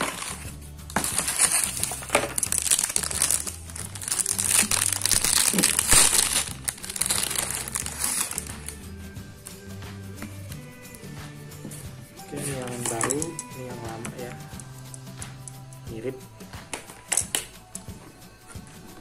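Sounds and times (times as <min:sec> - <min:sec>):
plastic packaging crinkling: 0:00.0 - 0:08.8, 0:12.4 - 0:13.4
background music: 0:00.0 - 0:19.0.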